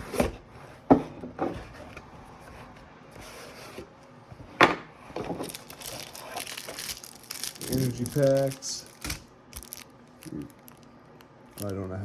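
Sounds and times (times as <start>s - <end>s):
foil wrapper crinkling: 5.4s - 12.0s.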